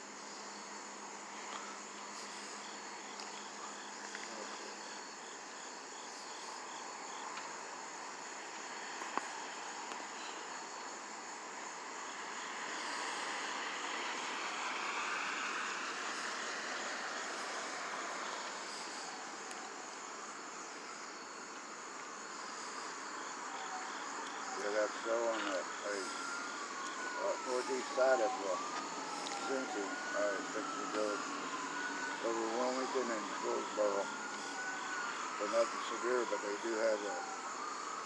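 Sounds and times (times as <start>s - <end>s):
crickets trilling: 0.0s - 38.0s
distant noise swell: 11.8s - 21.0s, 22.4s - 38.0s.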